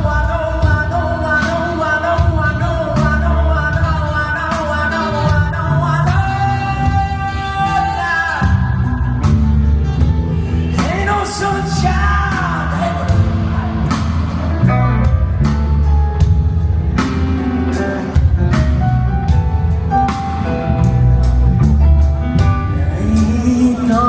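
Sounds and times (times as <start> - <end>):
person singing: 0.0 - 9.4, 10.5 - 15.9, 22.2 - 24.0
live rock band playing: 0.0 - 24.0.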